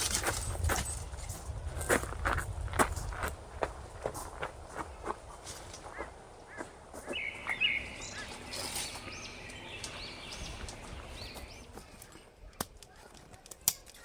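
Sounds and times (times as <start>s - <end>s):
wild birds chirping: 3.8s - 12.6s.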